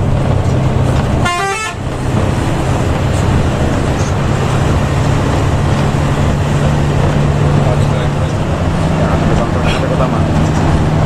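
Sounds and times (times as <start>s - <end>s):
bus engine drone: 0.0s - 11.0s
vehicle horn blast: 1.2s - 1.8s.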